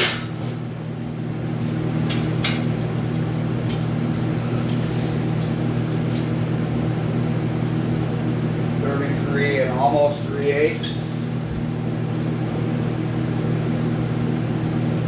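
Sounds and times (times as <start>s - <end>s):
machine hum: 5.3s - 15.0s.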